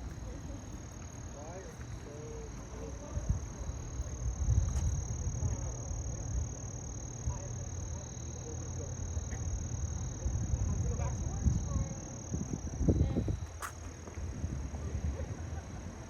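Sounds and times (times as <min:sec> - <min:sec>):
crickets chirring: 0:00.0 - 0:14.7
wind on microphone: 0:03.0 - 0:06.5, 0:10.3 - 0:15.4.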